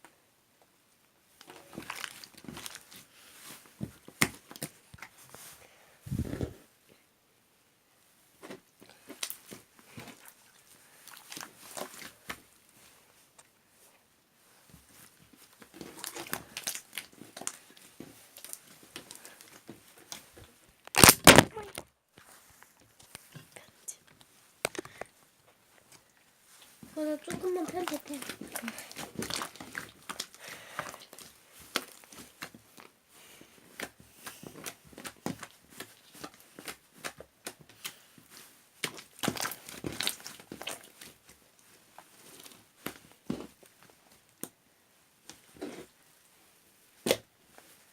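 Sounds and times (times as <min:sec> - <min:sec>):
soft rustling: 0:01.4 - 0:07.0, 0:21.5 - 0:47.9.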